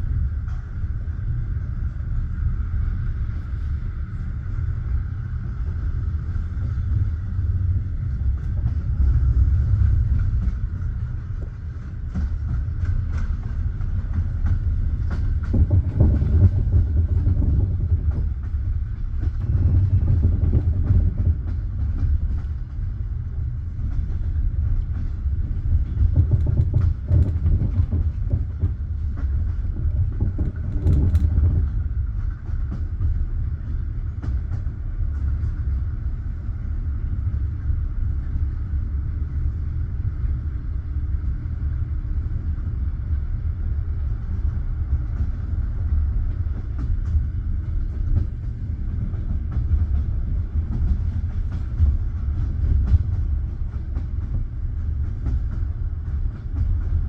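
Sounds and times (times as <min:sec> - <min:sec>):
train wheels rumbling on rails: 0:00.0 - 0:57.0
rail joint knocks: 0:25.8 - 0:32.3.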